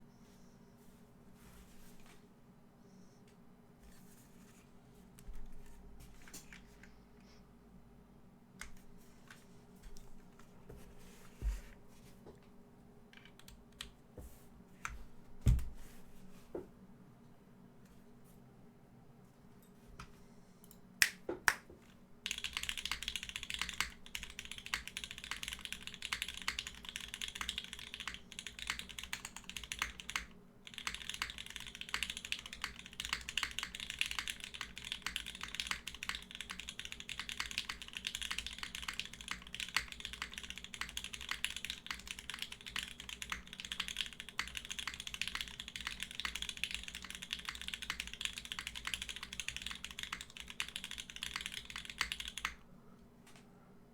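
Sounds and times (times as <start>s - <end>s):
mechanical keyboard typing: 22.2s - 52.6s.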